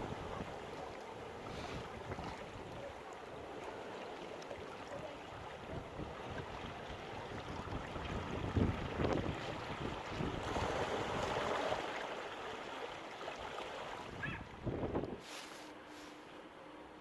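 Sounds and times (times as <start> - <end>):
waves washing: 0.0 - 16.4
wind on microphone: 7.2 - 11.2, 14.1 - 15.3.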